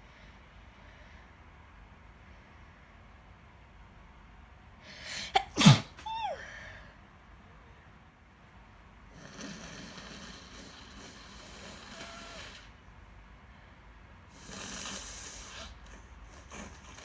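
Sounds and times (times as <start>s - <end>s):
person blowing nose: 5.1s - 6.4s, 11.8s - 12.6s.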